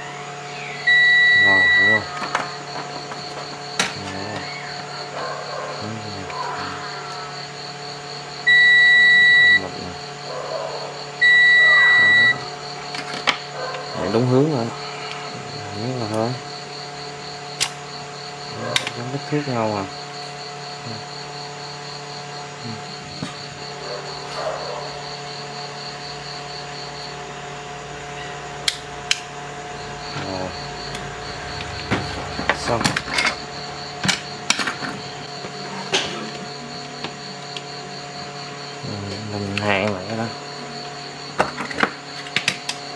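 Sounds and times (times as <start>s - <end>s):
steady background hum: 0.0s - 42.9s
multimeter continuity beep: 0.6s - 2.2s, 8.4s - 9.9s, 11.2s - 12.5s.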